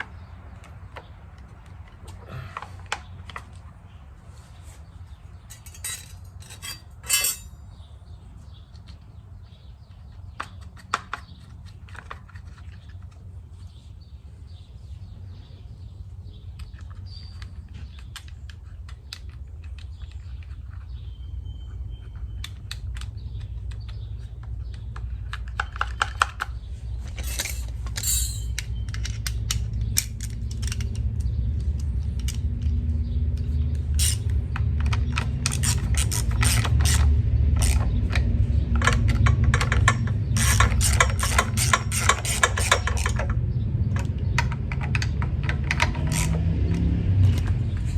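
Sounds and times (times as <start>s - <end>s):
metal parts clinking: 5.5s - 7.7s, 27.1s - 31.0s, 34.0s - 37.8s, 38.8s - 43.4s.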